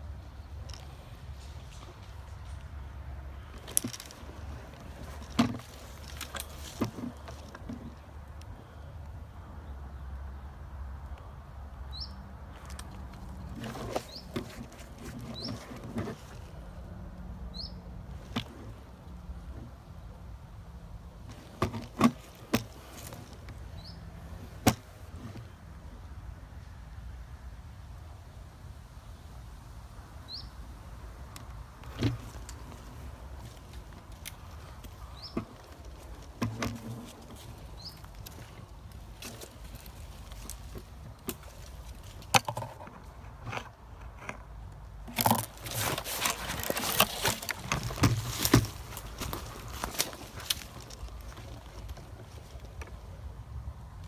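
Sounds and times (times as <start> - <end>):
footsteps crunching through dry brush: 3.5 - 8.0, 31.8 - 42.3, 45.1 - 52.8
twigs snapping: 3.5 - 8.5, 31.3 - 42.9, 45.1 - 53.0.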